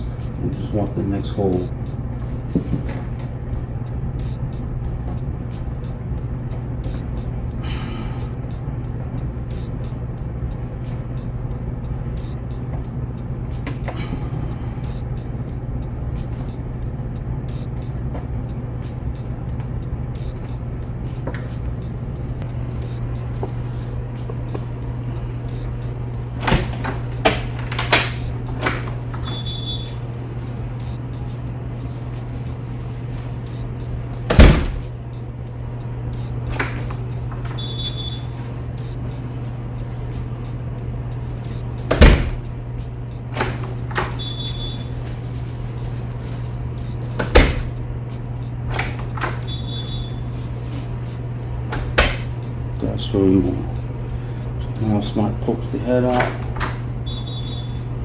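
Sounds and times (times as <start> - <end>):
steady low hum: 0.0 - 58.0
high squeaks: 11.1 - 35.0, 36.2 - 42.6, 43.2 - 47.8, 48.5 - 52.6, 55.6 - 58.0
door slamming shut: 26.4 - 29.9, 34.3 - 34.9, 41.9 - 42.4, 47.2 - 47.8, 51.8 - 52.3.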